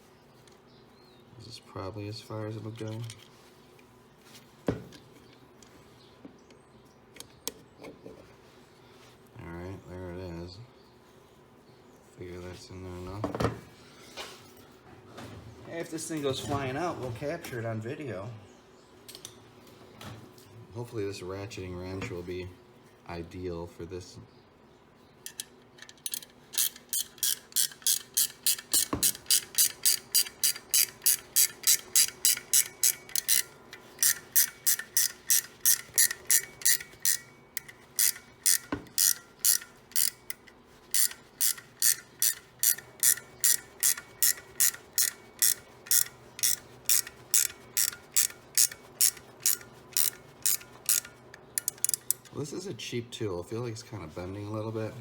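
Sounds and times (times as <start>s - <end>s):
ratcheting wrench clicking: 25.2s - 52.4s.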